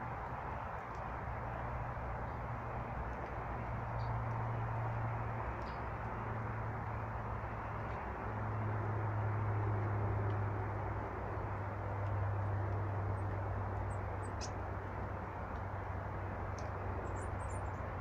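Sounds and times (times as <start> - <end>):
background traffic rumble: 0.0 - 18.0
small birds chirping: 13.1 - 14.6, 16.6 - 18.0.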